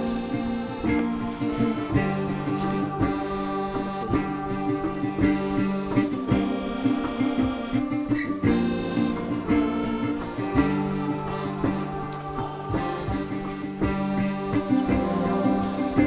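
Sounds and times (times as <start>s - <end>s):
plucked guitar music with beat: 0.0s - 16.0s.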